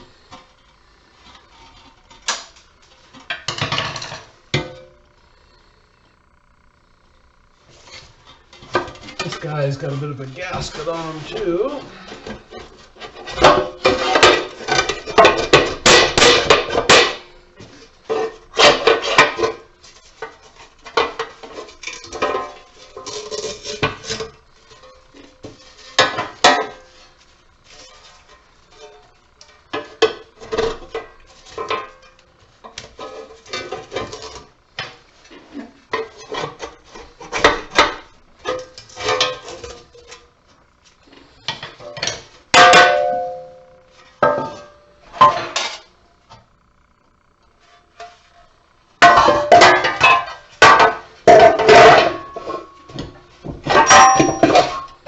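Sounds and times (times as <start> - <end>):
metal parts clanking and clinking: 53.6 - 55.0.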